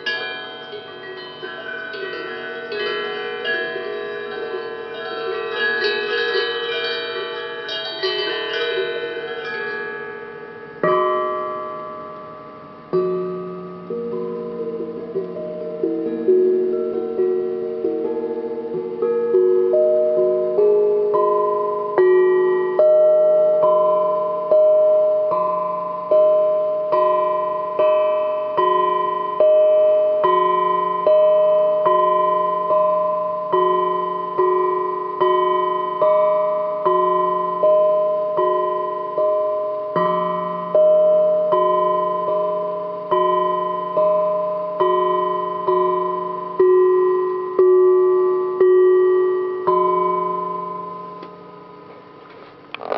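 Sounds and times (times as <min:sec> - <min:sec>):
iron instrument struck: 0:00.0 - 0:52.9.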